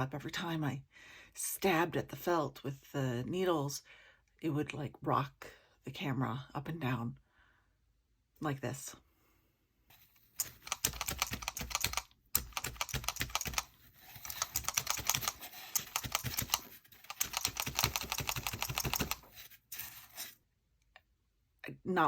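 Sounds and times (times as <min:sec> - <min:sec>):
felting needles stabbing wool: 0:10.4 - 0:19.4.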